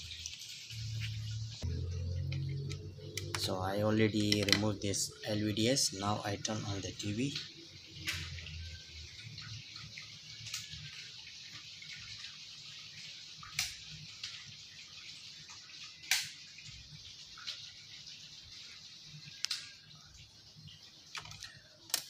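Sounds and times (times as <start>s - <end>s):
low hum: 0.7s - 5.6s.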